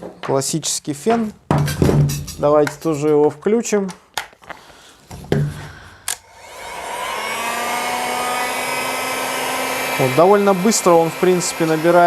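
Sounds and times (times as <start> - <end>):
heat gun fan whirring: 6.1 - 12.0.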